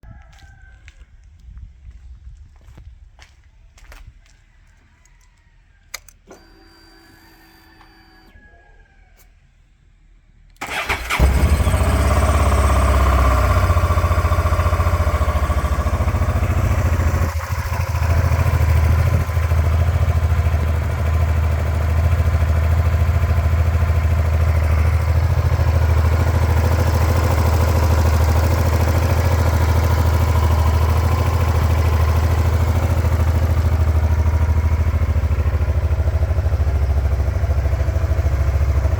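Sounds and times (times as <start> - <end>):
motorcycle engine starting and idling: 5.9 - 8.5, 10.5 - 38.9.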